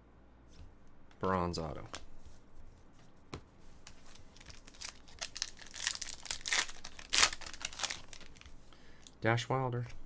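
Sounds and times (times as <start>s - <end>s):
wrapper crinkling and tearing: 4.3s - 8.6s.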